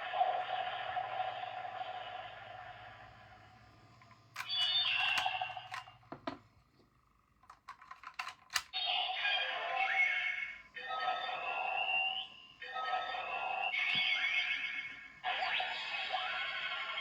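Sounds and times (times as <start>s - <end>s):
toy buttons clicking: 4.2s - 6.0s, 7.4s - 8.7s.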